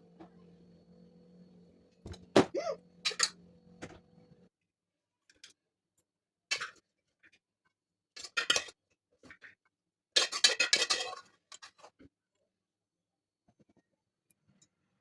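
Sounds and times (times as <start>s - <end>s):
metal utensil scraping pot: 10.2s - 11.6s.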